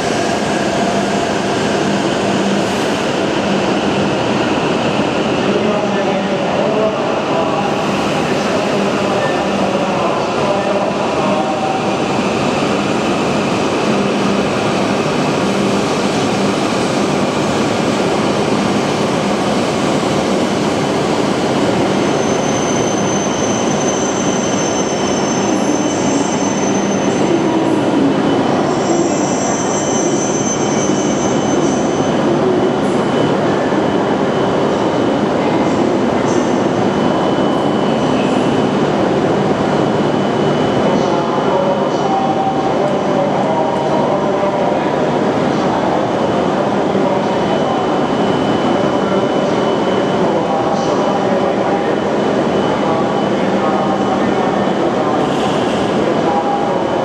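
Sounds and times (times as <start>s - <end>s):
high-pitched wheel squeal: 22.0s - 27.4s, 28.6s - 32.1s.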